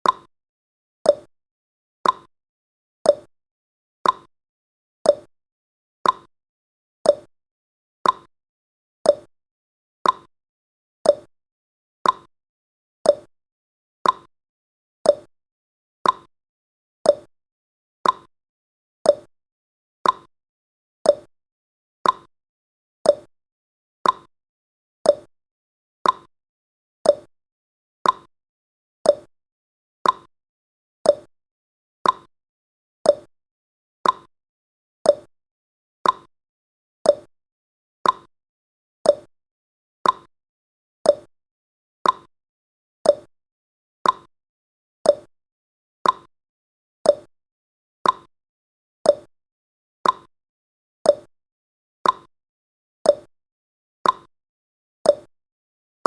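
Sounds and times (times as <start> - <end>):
clock ticking: 34.0 - 34.3, 40.0 - 40.3, 46.0 - 46.3.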